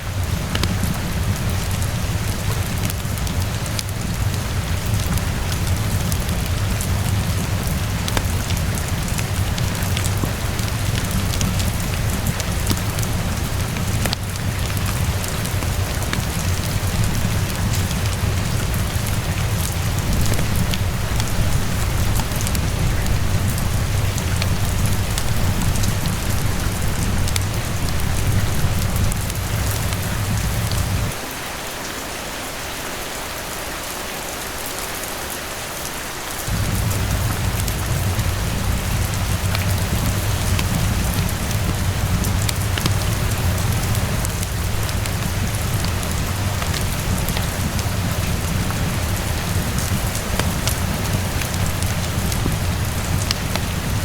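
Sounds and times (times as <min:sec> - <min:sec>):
rain pattering: 0:00.0 - 0:54.0
rain drop ticks: 0:00.2 - 0:31.1, 0:36.5 - 0:54.0
low rumble: 0:36.5 - 0:54.0.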